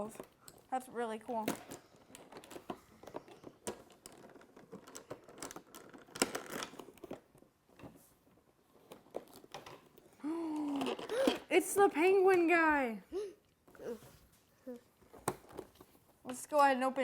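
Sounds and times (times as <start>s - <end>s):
packaging crinkling and rustling: 1.3s - 7.6s, 8.3s - 11.3s.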